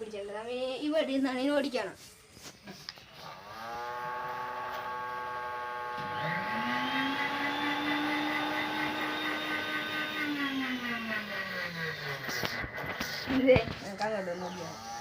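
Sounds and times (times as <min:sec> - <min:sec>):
small electric motors whining: 0:03.0 - 0:15.0.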